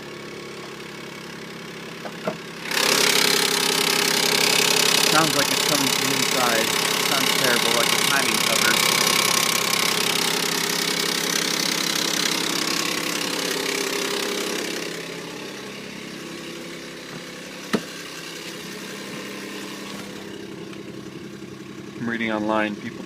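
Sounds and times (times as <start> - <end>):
car engine idling with rattling: 0.0 - 23.0
man talking: 5.1 - 8.9, 22.0 - 23.0.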